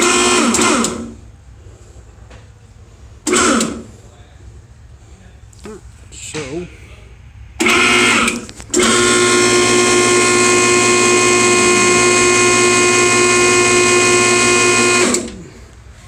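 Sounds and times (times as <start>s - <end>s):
hydraulic pump motor whining: 0.0s - 1.2s, 3.2s - 3.9s, 7.6s - 15.9s.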